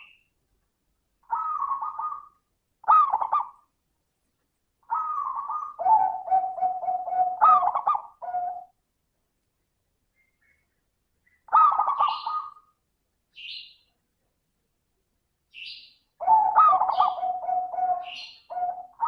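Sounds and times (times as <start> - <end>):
dove cooing: 1.3 - 3.6, 4.9 - 8.7, 11.5 - 12.7, 16.2 - 19.0.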